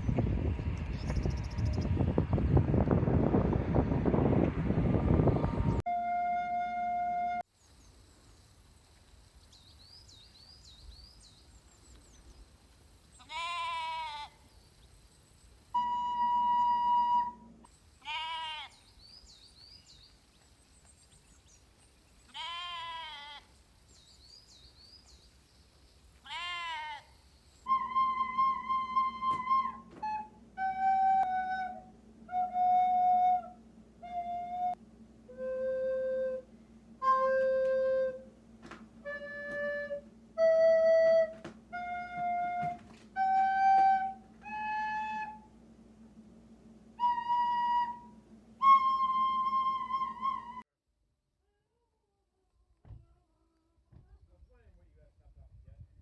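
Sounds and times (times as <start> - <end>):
sheep bleating: 13.2 - 14.4, 18.0 - 18.8, 22.3 - 23.5, 26.2 - 27.1
recorder playing slow tune: 15.8 - 17.6, 27.7 - 38.4, 47.0 - 50.6.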